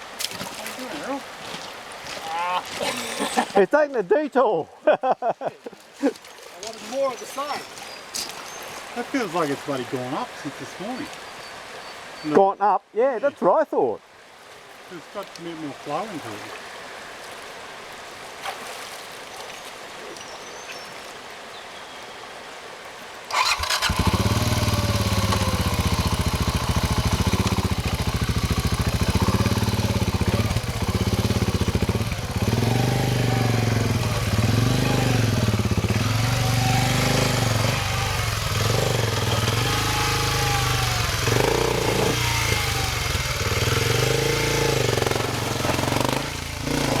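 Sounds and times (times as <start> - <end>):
rushing river water: 0.0 - 47.0
vehicle engine revving: 23.3 - 47.0.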